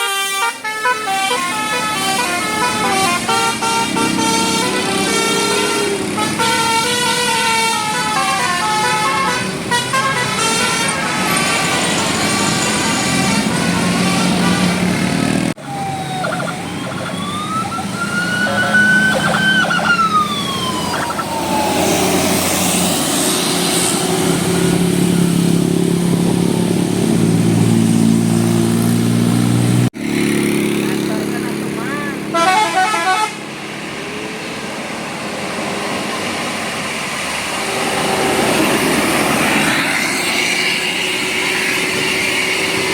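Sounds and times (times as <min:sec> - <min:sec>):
musical bus horns playing melodies: 0:00.0 - 0:15.5, 0:16.2 - 0:23.2, 0:31.9 - 0:33.6.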